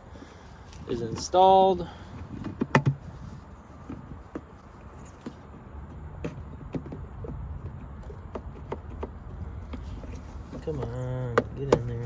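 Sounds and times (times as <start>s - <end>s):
plastic car parts clicking and knocking: 2.2s - 3.0s, 5.2s - 12.0s.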